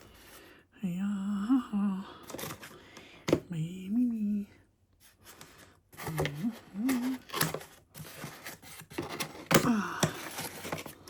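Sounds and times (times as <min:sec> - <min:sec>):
man humming: 0:06.1 - 0:07.3.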